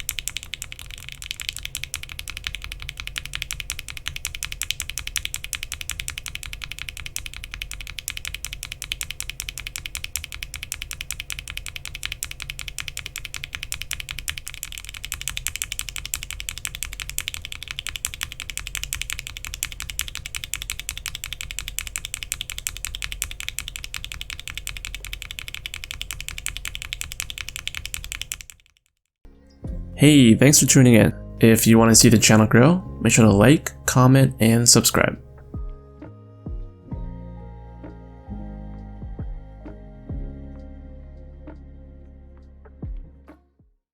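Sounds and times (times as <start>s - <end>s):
fast typing on mechanical keyboard: 0.0s - 28.9s.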